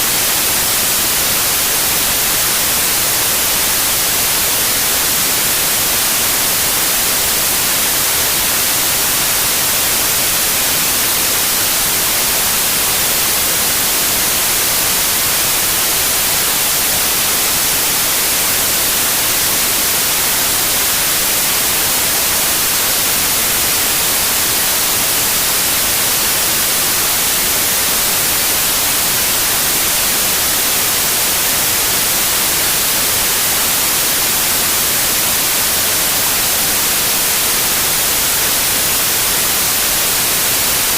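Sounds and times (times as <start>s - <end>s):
white noise hiss: 0.0s - 40.9s.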